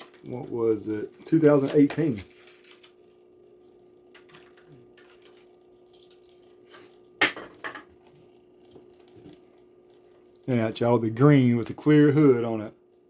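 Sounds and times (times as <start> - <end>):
packaging clicks and rustles: 1.4 - 3.1
packaging crackle: 1.4 - 7.1.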